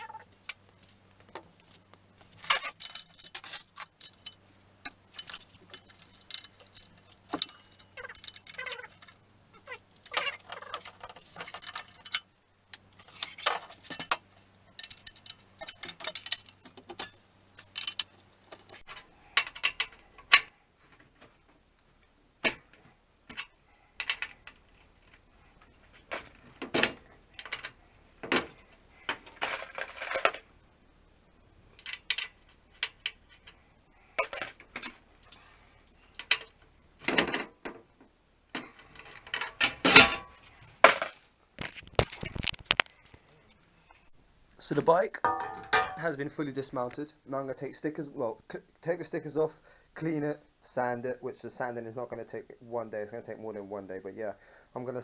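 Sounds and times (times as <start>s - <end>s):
metallic clinks and rattles of tools: 0.0s - 18.8s, 45.3s - 46.1s.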